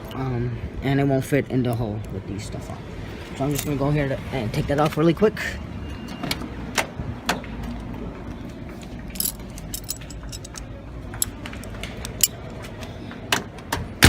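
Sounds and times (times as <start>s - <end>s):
small metal parts clinking: 3.4s - 3.8s, 9.1s - 11.4s.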